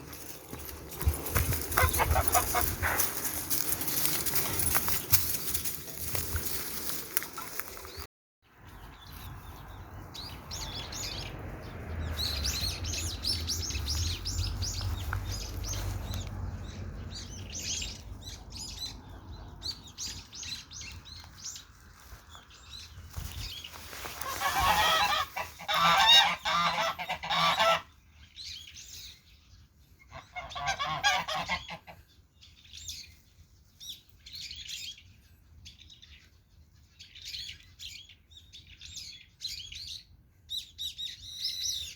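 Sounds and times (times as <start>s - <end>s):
geese honking: 1.7s - 3.1s, 24.2s - 27.9s, 30.1s - 32.0s.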